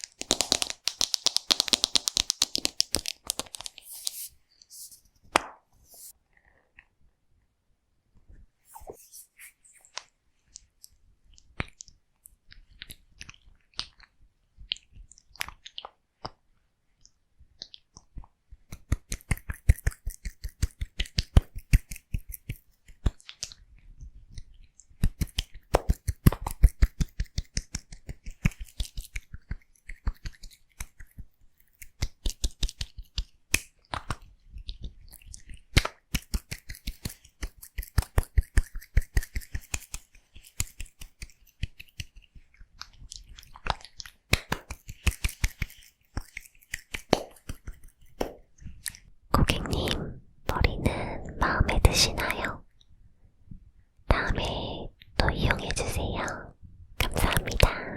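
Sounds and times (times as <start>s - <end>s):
scissors snipping hair: 18.7s - 23.6s, 25.0s - 34.2s, 35.7s - 49.0s.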